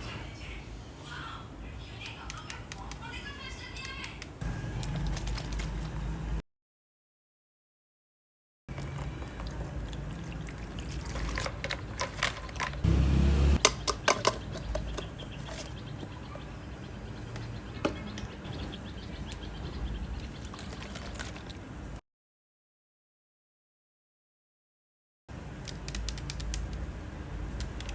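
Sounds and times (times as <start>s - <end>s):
sharp clicks: 25.6s - 26.9s.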